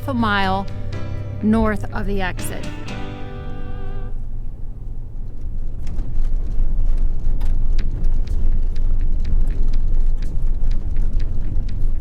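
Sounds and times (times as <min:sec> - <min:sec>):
tyres rumbling on gravel road: 0:00.0 - 0:09.0
sharp ticks and rattles: 0:05.8 - 0:12.0.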